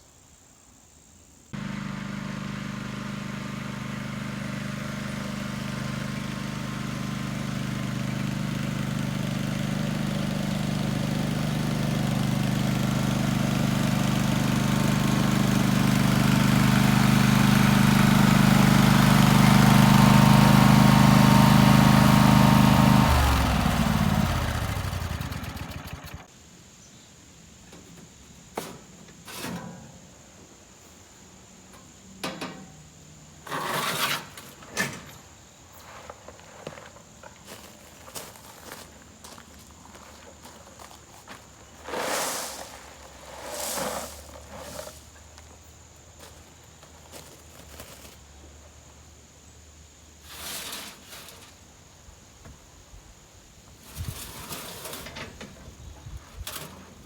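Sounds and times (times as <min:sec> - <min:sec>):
small engine vehicle running: 0:01.6 - 0:26.3, 0:46.1 - 0:48.7.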